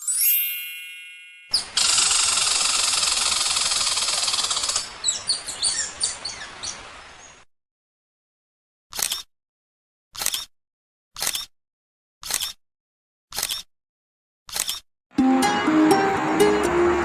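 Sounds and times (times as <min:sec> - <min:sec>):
bell-like chime: 0:00.0 - 0:01.8, 0:15.2 - 0:17.0.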